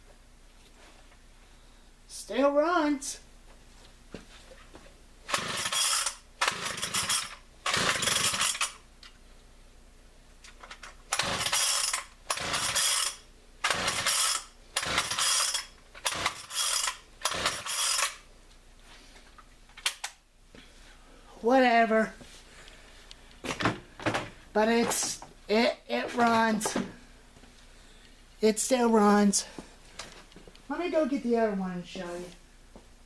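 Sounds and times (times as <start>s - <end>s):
chainsaw starter cord pulls: 5.3s - 8.8s, 10.7s - 18.2s.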